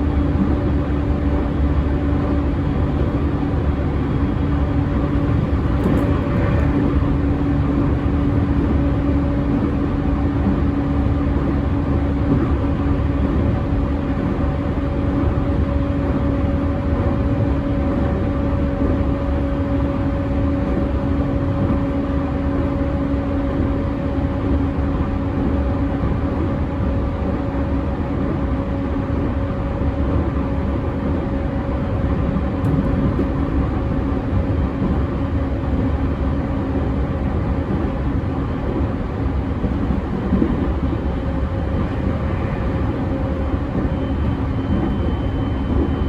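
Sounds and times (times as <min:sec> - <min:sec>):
train wheels rumbling on rail: 0:00.0 - 0:46.0
traction motor hum: 0:03.1 - 0:09.7, 0:41.3 - 0:44.9.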